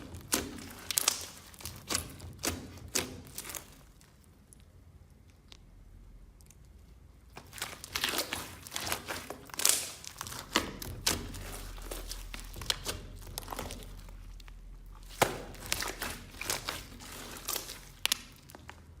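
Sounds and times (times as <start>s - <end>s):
slime crackling clicks: 7.6s - 14.5s, 15.1s - 18.9s.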